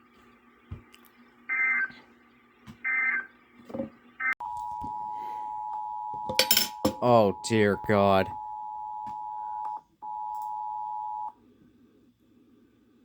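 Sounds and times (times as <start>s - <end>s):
steady two-tone attention signal: 4.4s - 11.3s.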